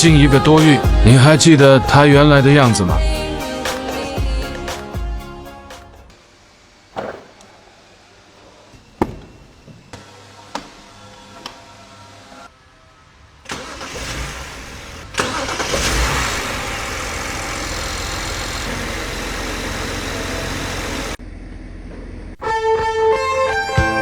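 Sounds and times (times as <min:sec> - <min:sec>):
car engine starting and running: 0:13.3 - 0:21.3.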